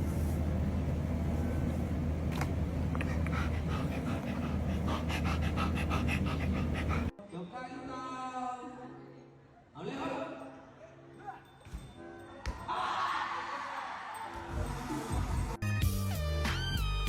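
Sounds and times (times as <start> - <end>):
low hum: 0.0 - 7.1
animal panting rapidly: 2.9 - 7.1.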